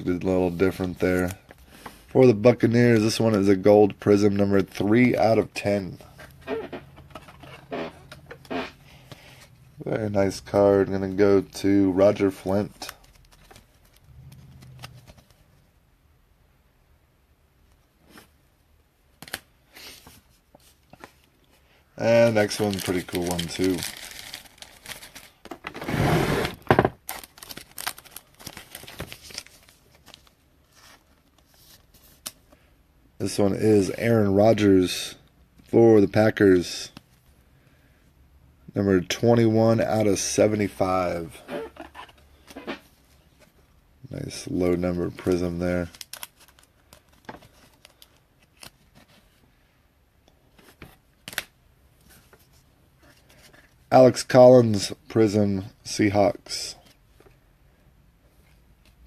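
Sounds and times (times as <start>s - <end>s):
trading cards rustling and clicking: 12.2s - 15.4s, 22.1s - 25.8s, 27.1s - 32.6s, 45.1s - 49.3s.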